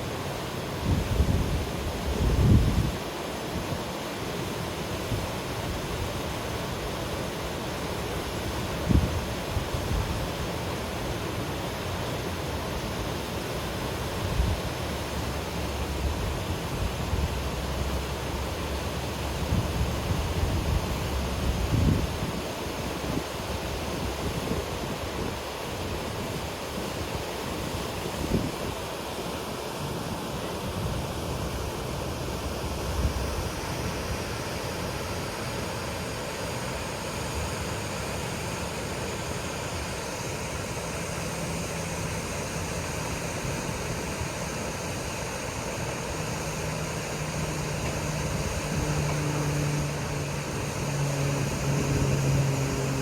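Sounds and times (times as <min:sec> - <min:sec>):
waterfall rushing: 0:03.0 - 0:53.0
motor low hum: 0:45.7 - 0:53.0.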